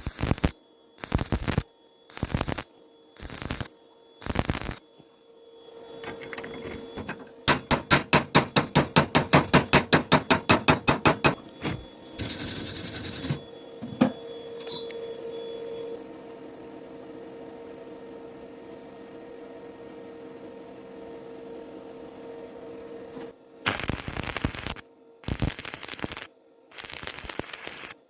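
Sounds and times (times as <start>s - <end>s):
steady hum: 5.8s - 15.9s
rapid metal tapping: 7.0s - 11.4s.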